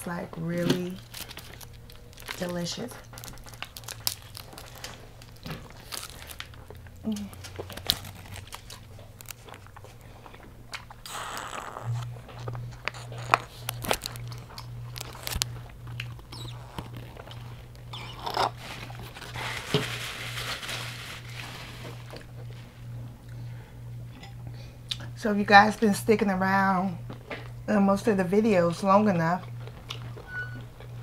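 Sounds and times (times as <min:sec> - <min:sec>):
low pulsing hum: 0:00.0 - 0:31.0
crunchy chewing: 0:00.9 - 0:20.5, 0:29.4 - 0:31.0.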